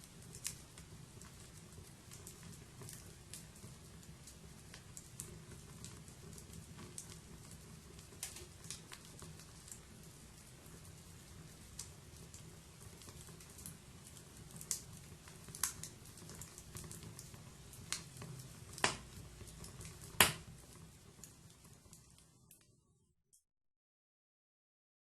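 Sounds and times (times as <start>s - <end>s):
wood fire rumbling: 0.0s - 23.0s
fire crackles and pops: 0.0s - 23.2s.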